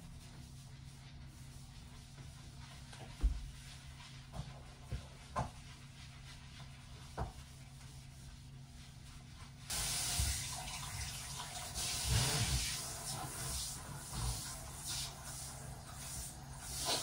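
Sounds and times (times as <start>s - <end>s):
water running into a sink: 9.7s - 17.0s.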